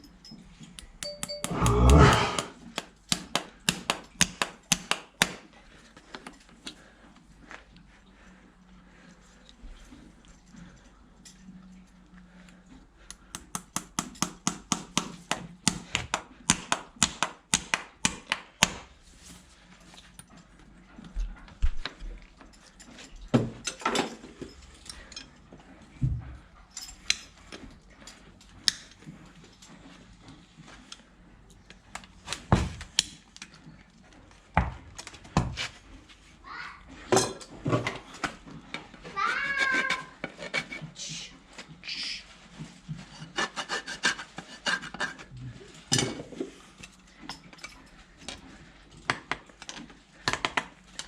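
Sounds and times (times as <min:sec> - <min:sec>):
tools tapping on hoof: 0:00.0 - 0:06.8, 0:13.1 - 0:19.0, 0:46.0 - 0:51.0.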